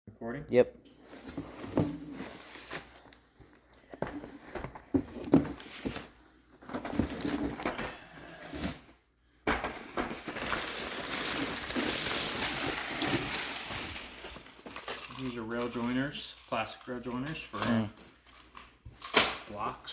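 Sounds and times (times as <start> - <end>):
wrapping crinkling: 10.2 - 19.9.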